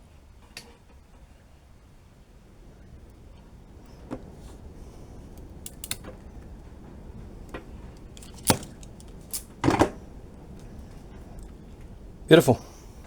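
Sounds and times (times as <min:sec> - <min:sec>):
small parts and tools clicking: 0:05.4 - 0:06.2, 0:08.0 - 0:10.0.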